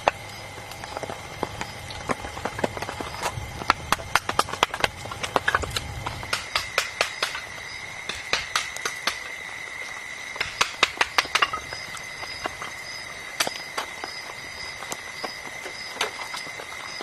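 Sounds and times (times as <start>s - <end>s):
sharp ticks and taps: 0.0s - 9.3s, 10.4s - 12.6s
insects buzzing: 0.0s - 17.0s.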